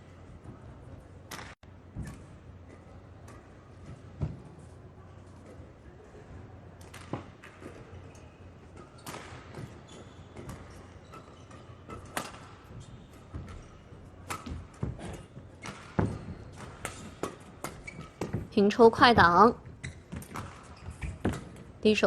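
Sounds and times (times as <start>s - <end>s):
badminton racket hitting shuttlecock: 11.9s - 12.8s, 14.2s - 14.9s.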